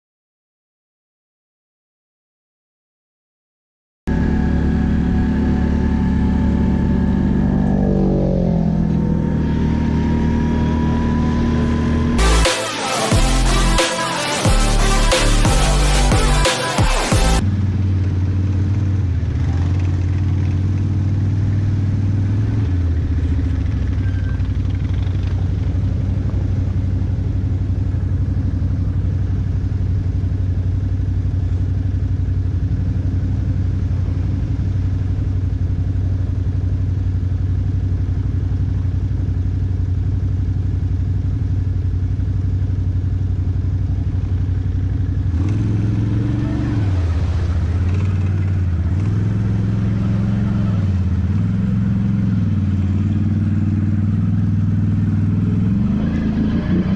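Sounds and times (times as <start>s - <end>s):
atv engine running: 4.1s - 56.9s.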